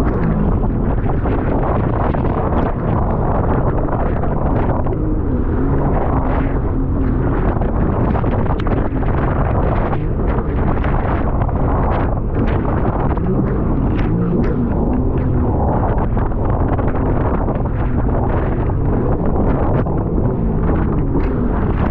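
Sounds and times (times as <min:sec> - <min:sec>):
small boat engine rumble: 0:00.0 - 0:21.9
wind buffeting microphone: 0:00.0 - 0:21.9.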